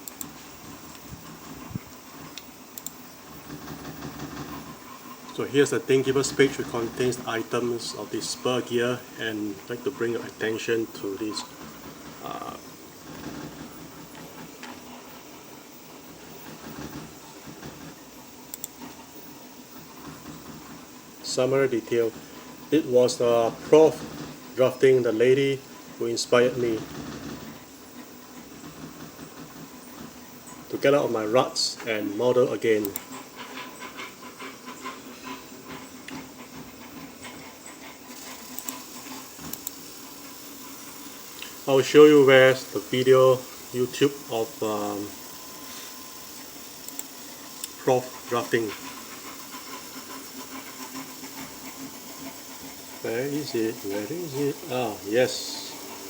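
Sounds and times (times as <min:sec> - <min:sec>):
faint clicks: 0:00.0 - 0:04.6, 0:16.4 - 0:19.0, 0:32.8 - 0:34.1, 0:38.3 - 0:39.8, 0:45.6 - 0:49.8
machinery hum and hiss: 0:00.0 - 0:56.0.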